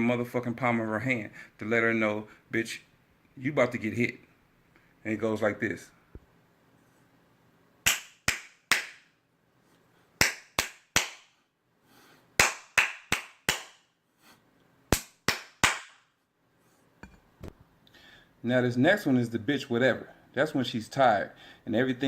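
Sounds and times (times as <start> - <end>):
hand claps: 7.8 - 9.1, 10.2 - 11.4, 12.4 - 13.9, 14.9 - 16.1.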